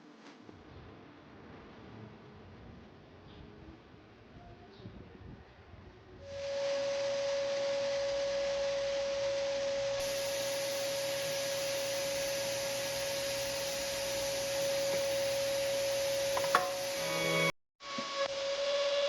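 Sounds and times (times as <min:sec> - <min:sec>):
router whining: 0:09.9 - 0:18.5.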